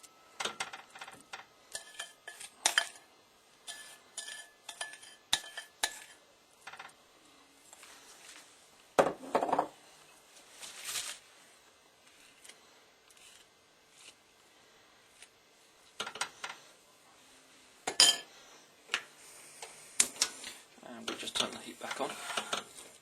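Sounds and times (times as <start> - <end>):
spoon clinking on dishes: 0.4 - 3.0, 3.7 - 6.2, 17.9 - 18.3.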